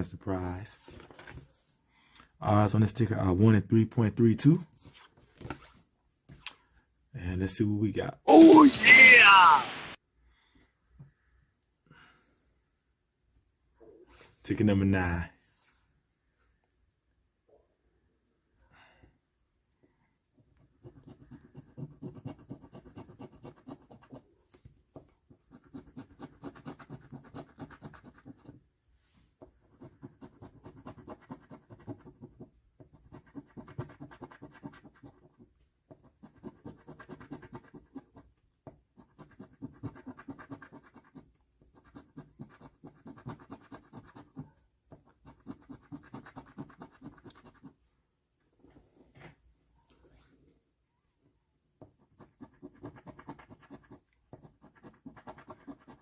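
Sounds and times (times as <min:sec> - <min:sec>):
scratching lottery ticket: 0:20.8 - 0:24.3, 0:25.4 - 0:28.6, 0:29.7 - 0:35.4, 0:36.1 - 0:38.2, 0:39.0 - 0:47.8, 0:52.2 - 0:56.0.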